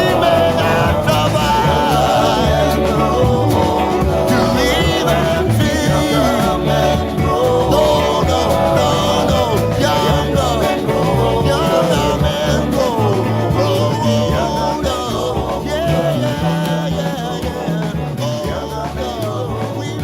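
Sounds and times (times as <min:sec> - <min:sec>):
folk-rock band music: 0:00.0 - 0:20.0.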